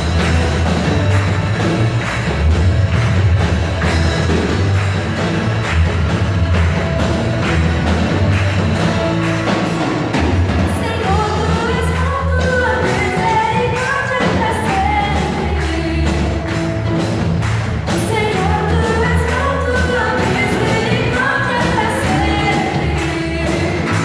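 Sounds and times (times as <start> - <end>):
steady drum beat: 0.0 - 24.0
worship band playing: 0.0 - 24.0
people singing: 18.0 - 24.0.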